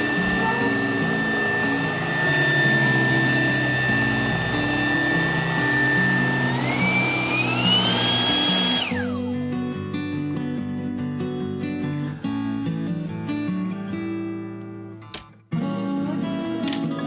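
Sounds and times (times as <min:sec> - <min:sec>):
vacuum cleaner motor whine: 0:00.0 - 0:09.4.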